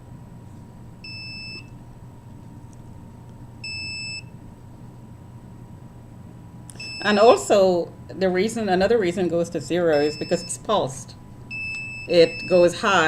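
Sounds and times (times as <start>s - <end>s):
detector alarm beeps: 1.0s - 1.7s, 3.6s - 4.3s, 6.7s - 7.4s, 9.9s - 10.7s, 11.5s - 13.0s.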